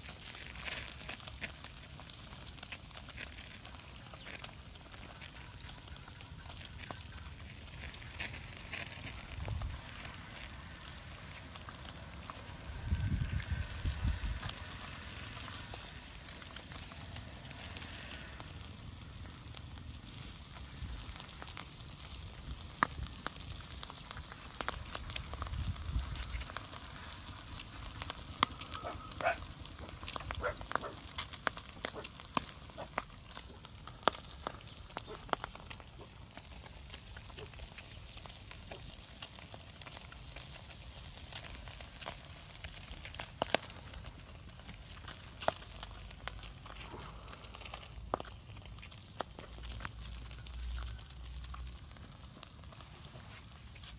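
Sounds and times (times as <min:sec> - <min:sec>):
fire crackles and pops: 0:00.0 - 0:53.9
food sizzling: 0:00.0 - 0:53.9.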